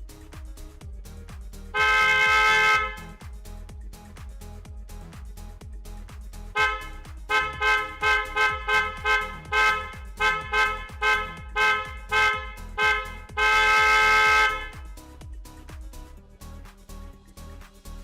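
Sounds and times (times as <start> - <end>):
background music with a beat: 0.0 - 18.0
electric car horn toots: 1.8 - 3.1, 6.6 - 14.8.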